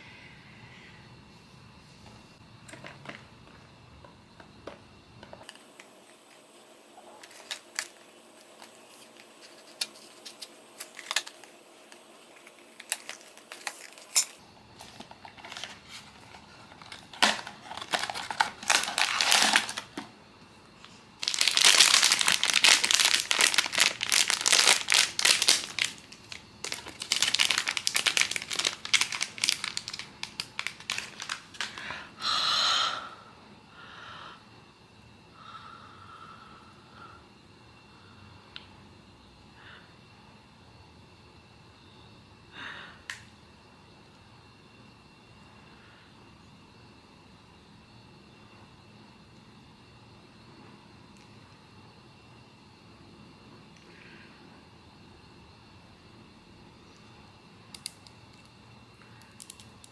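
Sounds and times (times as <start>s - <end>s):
wrapping crinkling and rustling: 7.2s - 20.1s, 21.2s - 31.9s, 59.2s - 59.9s.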